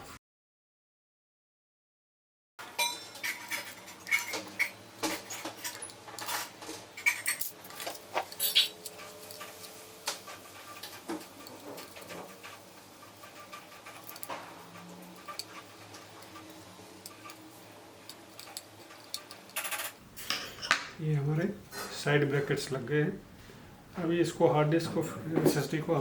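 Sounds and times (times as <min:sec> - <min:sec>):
screwdriver clicking on metal: 0:03.2 - 0:12.4, 0:13.2 - 0:14.4, 0:15.1 - 0:20.0.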